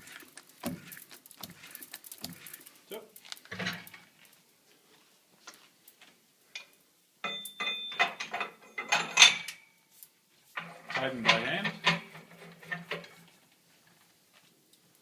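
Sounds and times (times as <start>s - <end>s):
metal parts clicking and clinking: 6.6s - 9.6s.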